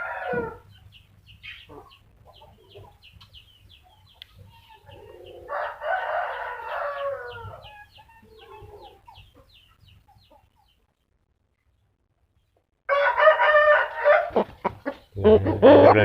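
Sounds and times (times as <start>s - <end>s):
rooster crowing: 0.0s - 0.6s, 5.5s - 7.7s, 12.9s - 14.4s.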